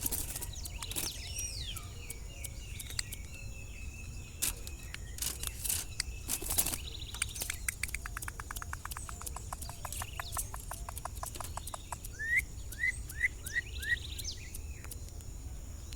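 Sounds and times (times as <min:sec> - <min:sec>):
bird buzzy rattles: 0:00.0 - 0:03.4, 0:04.3 - 0:15.2
bird calling with clicking notes: 0:00.0 - 0:15.3
bird whistled notes: 0:08.9 - 0:15.0.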